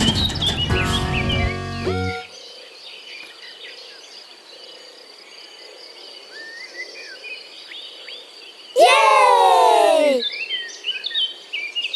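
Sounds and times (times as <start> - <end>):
birds chirping: 0.0 - 2.4.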